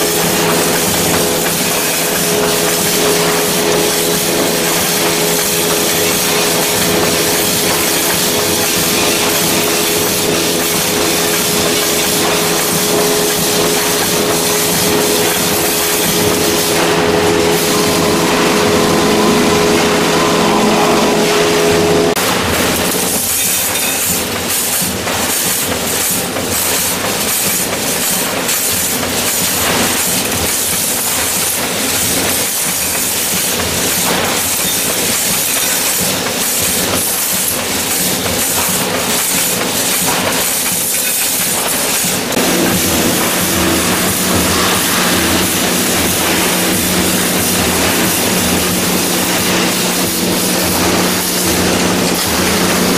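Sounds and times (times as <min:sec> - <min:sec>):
machine hum: 0:00.0 - 0:23.4, 0:37.6 - 0:52.9
machine strokes clattering: 0:00.0 - 0:52.9
welding machine hiss: 0:00.0 - 0:52.9.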